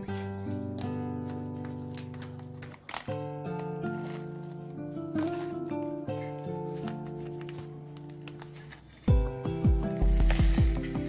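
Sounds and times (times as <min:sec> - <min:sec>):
background music with a beat: 0:09.1 - 0:11.0.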